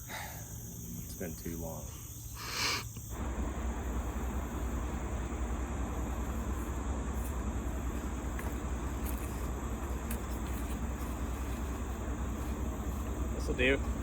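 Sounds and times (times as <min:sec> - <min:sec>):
low rumble with hiss: 0:03.0 - 0:14.0.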